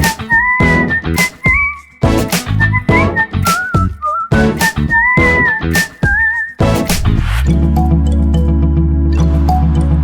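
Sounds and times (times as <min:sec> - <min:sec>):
drum beat and bass: 0:00.0 - 0:08.4
whistled melody: 0:00.0 - 0:10.0.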